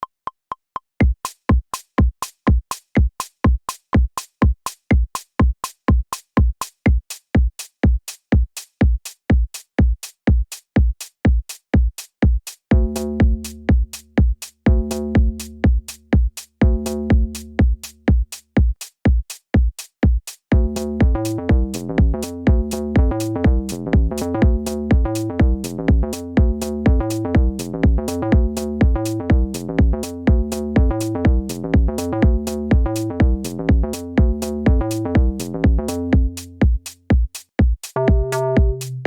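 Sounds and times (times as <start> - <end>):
four-on-the-floor kick drum: 1.0 - 39.0
synth bassline: 12.8 - 13.7, 14.7 - 15.7, 16.6 - 17.7, 20.5 - 36.6, 38.0 - 39.0.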